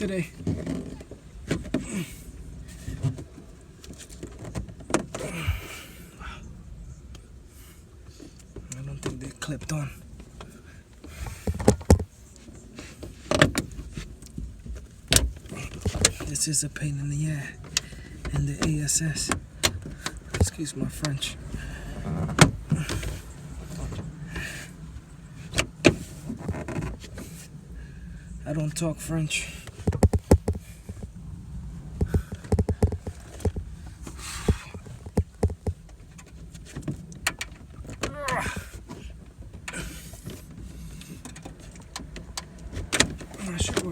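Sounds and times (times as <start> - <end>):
plastic knocks and clacks: 11.3 - 12.1, 17.6 - 21.2, 29.7 - 31.2, 32.0 - 38.1.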